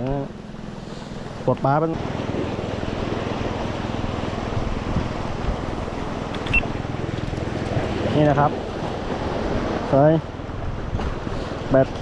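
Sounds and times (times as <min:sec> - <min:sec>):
surf on rocky shore: 0:00.0 - 0:12.0
wind rumbling on microphone: 0:01.2 - 0:12.0.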